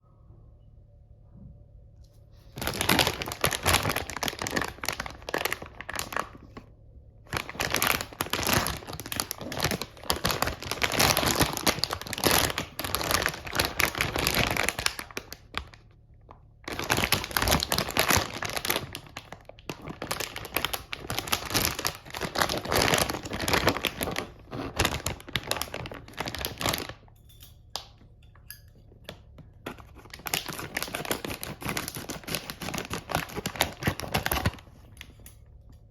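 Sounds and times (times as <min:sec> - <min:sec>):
plastic packaging crinkling and tearing: 0:02.4 - 0:06.6, 0:07.3 - 0:15.8, 0:16.6 - 0:27.0, 0:29.7 - 0:35.2.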